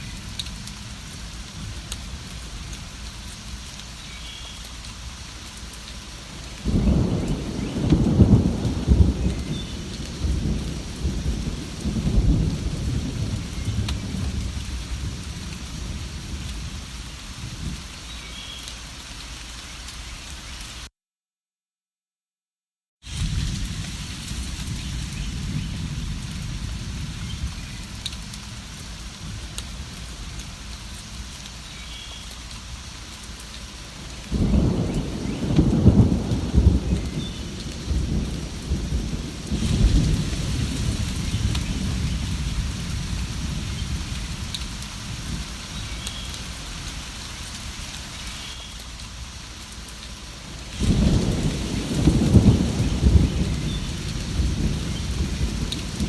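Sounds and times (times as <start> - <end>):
steady rain falling: 0.0 - 20.9, 23.0 - 56.0
low roll of thunder: 6.6 - 16.8, 23.1 - 30.5, 34.1 - 46.1, 50.6 - 56.0.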